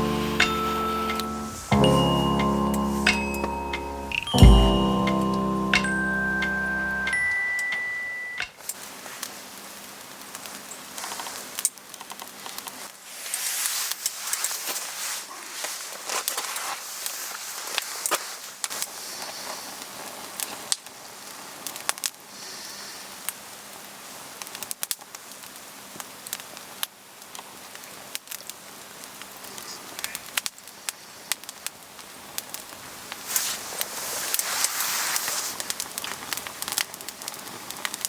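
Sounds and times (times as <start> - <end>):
campfire crackling and popping: 35.5 - 38.0.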